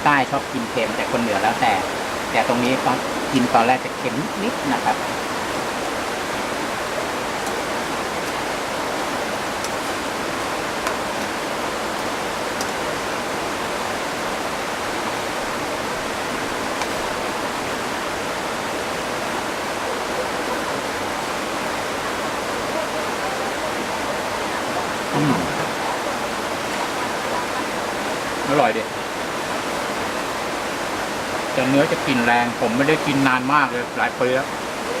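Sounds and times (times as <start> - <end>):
waterfall roaring: 0.0 - 35.0.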